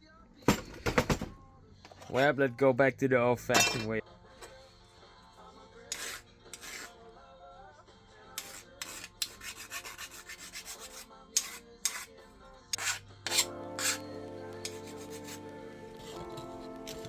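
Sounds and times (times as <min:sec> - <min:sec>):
hand file rasping on steel: 0:05.9 - 0:07.0, 0:08.4 - 0:17.0.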